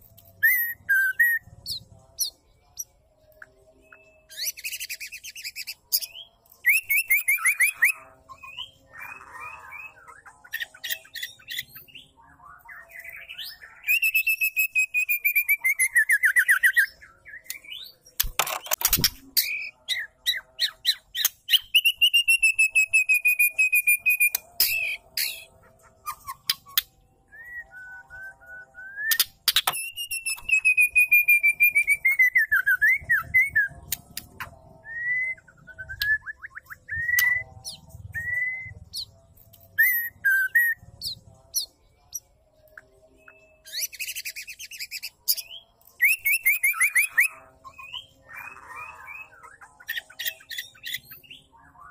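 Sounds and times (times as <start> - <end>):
sharp bird clicks: 17.5 - 19.5.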